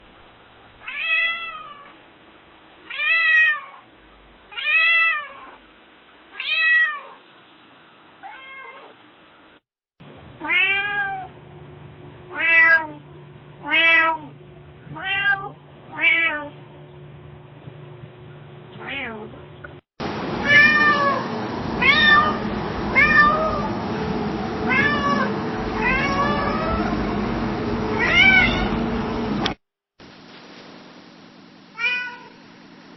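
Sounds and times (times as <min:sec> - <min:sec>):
cat meowing: 0:00.8 - 0:02.0, 0:08.2 - 0:09.0, 0:10.4 - 0:11.3, 0:12.3 - 0:13.0, 0:13.6 - 0:14.3, 0:14.9 - 0:16.5, 0:18.8 - 0:19.3, 0:20.4 - 0:21.2, 0:21.8 - 0:22.4, 0:23.0 - 0:23.7, 0:24.7 - 0:27.0, 0:28.0 - 0:28.8, 0:31.8 - 0:32.4
steady low hum: 0:11.3 - 0:31.7
noisy background: 0:16.7 - 0:31.7.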